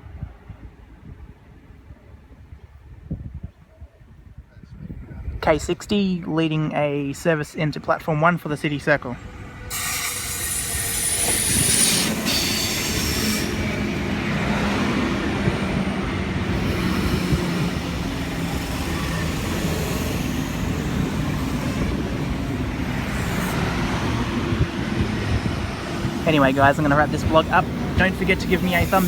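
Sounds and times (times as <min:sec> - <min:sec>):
train rumble and motor hum: 0:08.4 - 0:29.0
wheel and brake squeal: 0:09.7 - 0:13.8.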